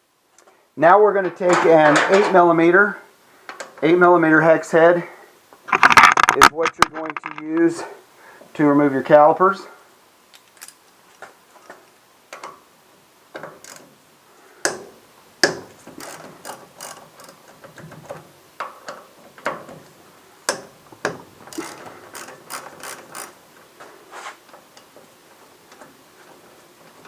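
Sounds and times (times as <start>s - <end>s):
socket ratchet clicking: 15.4s - 17.9s, 21.5s - 23.4s.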